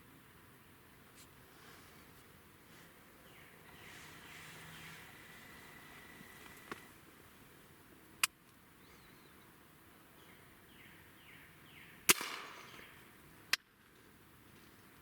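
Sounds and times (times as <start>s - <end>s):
faint bird chirps: 3.2s - 6.6s, 8.7s - 13.1s.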